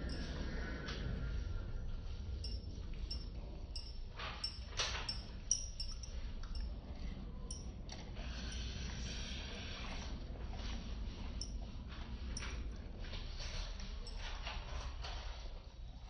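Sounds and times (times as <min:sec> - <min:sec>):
sharp clink: 0:02.4 - 0:06.7.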